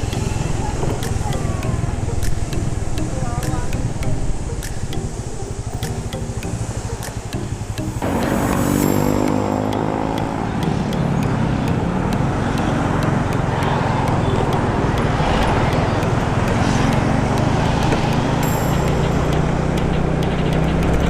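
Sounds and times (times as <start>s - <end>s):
thin high tone: 0.0s - 11.8s, 12.5s - 20.6s
vehicle engine running: 5.4s - 21.0s.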